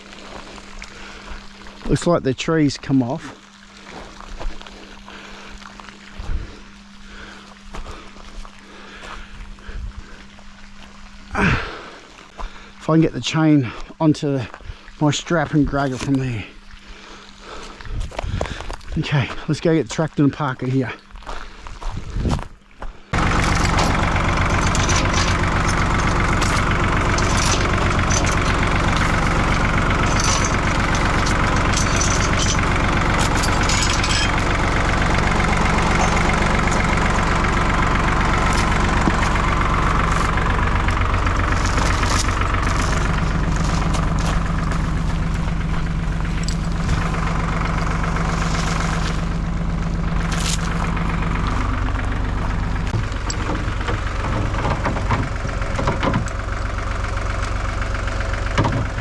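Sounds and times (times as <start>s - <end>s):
tractor engine running: 0.0s - 13.4s, 21.2s - 59.0s
clicks and rattles: 23.1s - 59.0s.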